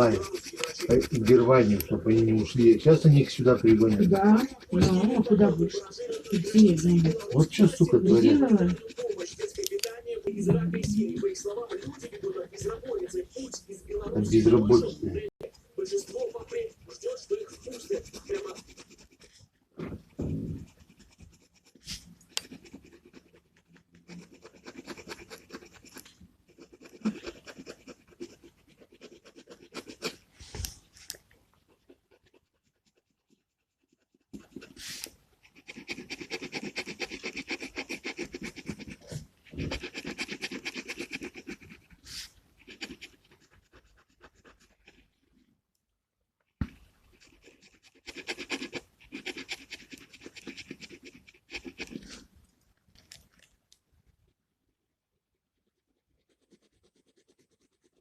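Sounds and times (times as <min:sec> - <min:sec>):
gel pen scratching on paper: 0:00.0 - 0:45.5, 0:46.6 - 0:52.3, 0:55.5 - 0:58.0.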